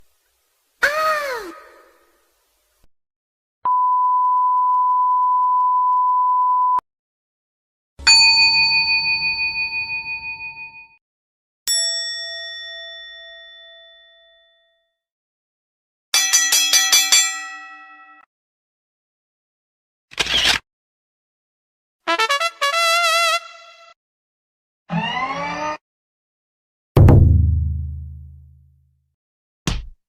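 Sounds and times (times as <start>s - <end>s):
censor beep: 3.7s - 6.8s
bell-like dings: 8.1s - 11.0s, 11.7s - 14.8s, 16.2s - 18.3s.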